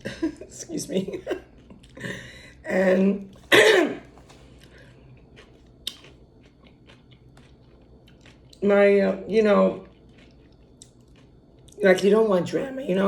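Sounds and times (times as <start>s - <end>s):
woman coughing: 3.4s - 4.1s.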